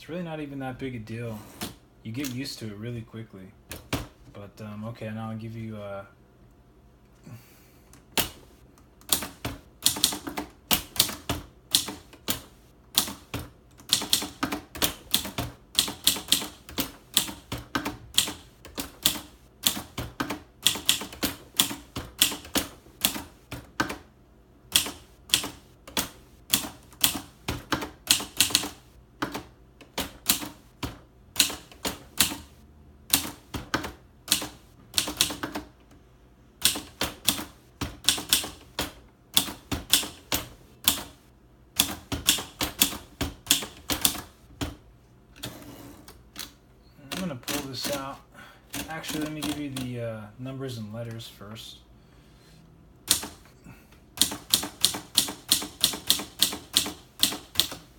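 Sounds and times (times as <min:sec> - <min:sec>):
typewriter keystrokes: 0:08.2 - 0:24.1, 0:24.7 - 0:35.7, 0:36.6 - 0:41.2, 0:41.8 - 0:44.8, 0:47.1 - 0:48.0, 0:48.7 - 0:49.9, 0:53.0 - 0:53.4, 0:54.2 - 0:57.9.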